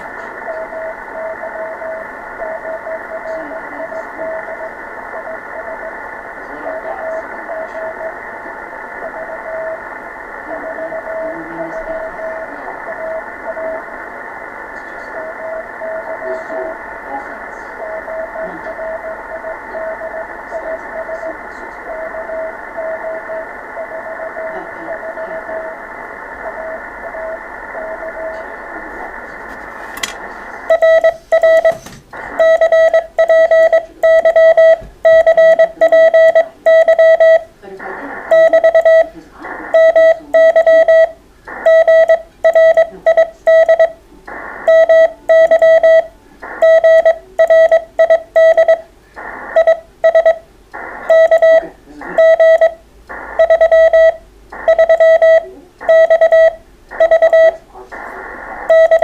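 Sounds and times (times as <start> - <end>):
receiver hiss: 0.0 - 59.0
radio click: 29.3 - 32.4, 46.4 - 59.0
morse code tone: 30.7 - 37.5, 38.3 - 39.1, 39.8 - 44.0, 44.7 - 48.8, 49.6 - 50.4, 51.1 - 52.8, 53.4 - 57.6, 58.7 - 59.0.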